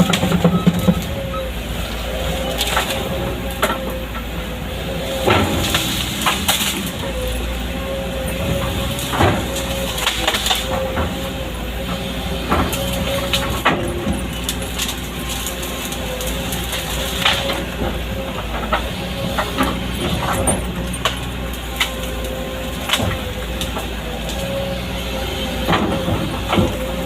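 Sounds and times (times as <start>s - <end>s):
excavator engine running: 0.0s - 27.0s
hydraulic whine: 0.0s - 27.0s
wood cracking and snapping: 8.3s - 11.4s, 12.5s - 24.8s.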